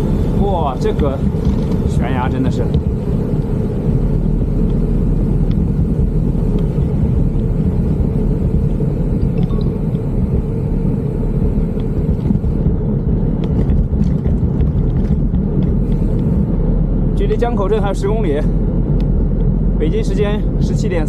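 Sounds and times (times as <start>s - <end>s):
wind buffeting microphone: 0.0s - 21.0s.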